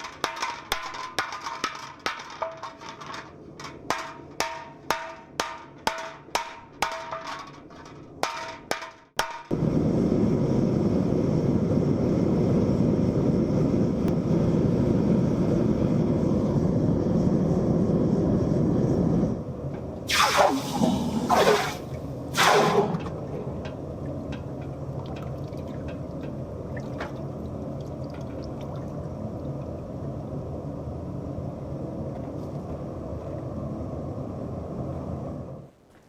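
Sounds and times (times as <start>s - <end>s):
short hissing surges: 20.1s - 23.2s.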